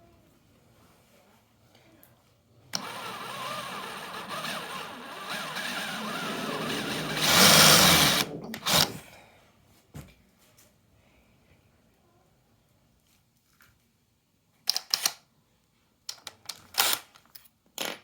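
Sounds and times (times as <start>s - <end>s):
cordless drill motor: 2.8s - 9.0s.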